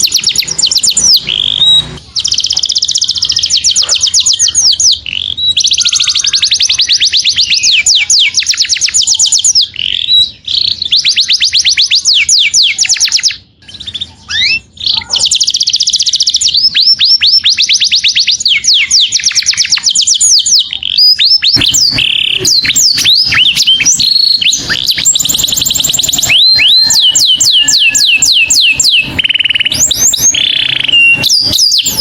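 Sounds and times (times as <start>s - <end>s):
canary singing trills: 0.0s - 32.0s.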